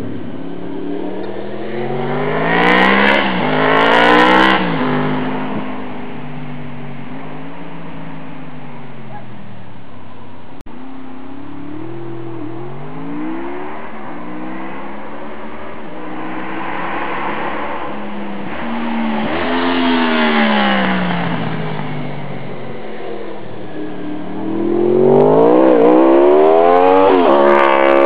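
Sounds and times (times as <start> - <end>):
motorcycle engine revving: 10.7 - 28.0.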